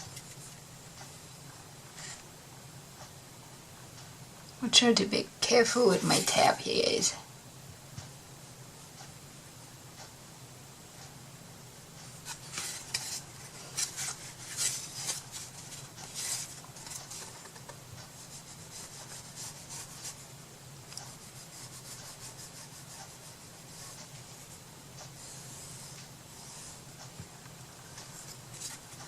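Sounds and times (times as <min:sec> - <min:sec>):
rubbing scrapes on paper and wood: 0:12.2 - 0:17.6, 0:18.2 - 0:20.2, 0:21.0 - 0:24.5.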